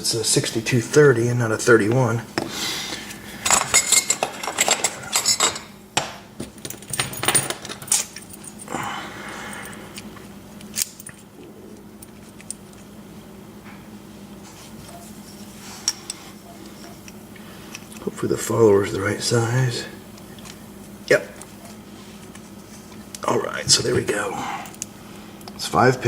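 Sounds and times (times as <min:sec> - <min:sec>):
metal lock parts clinking: 0:06.6 - 0:08.7.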